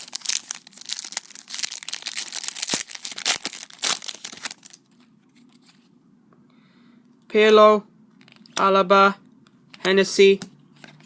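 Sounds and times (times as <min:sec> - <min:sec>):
plastic wrapper crinkling: 0:00.0 - 0:05.1.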